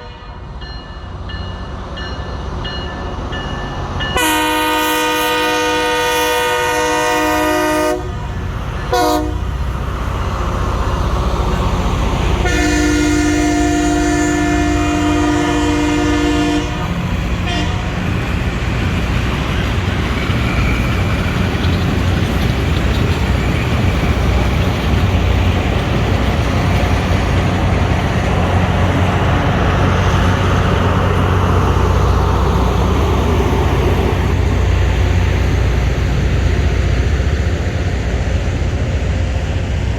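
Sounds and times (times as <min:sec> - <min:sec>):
locomotive air horn blowing: 0:00.0 - 0:00.5, 0:04.2 - 0:09.5, 0:12.4 - 0:18.0
diesel locomotive train rumbling by: 0:00.0 - 0:39.9.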